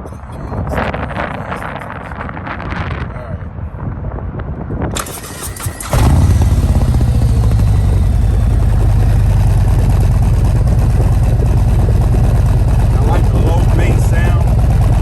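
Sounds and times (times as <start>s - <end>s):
motorcycle starter cranking: 5.0s - 15.0s
motorcycle engine idling: 5.9s - 15.0s.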